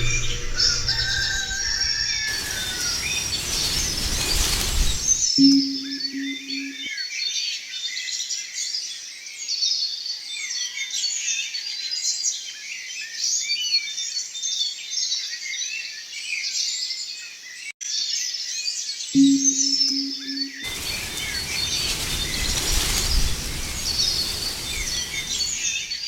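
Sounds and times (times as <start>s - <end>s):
songbirds chirping and warbling: 0.0s - 6.7s, 20.0s - 26.0s.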